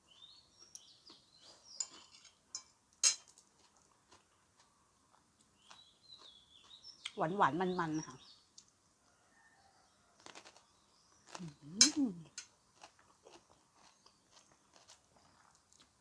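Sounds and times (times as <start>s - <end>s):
chewing food with crunches: 3.2s - 7.2s, 10.1s - 16.0s
person humming: 11.4s - 12.3s.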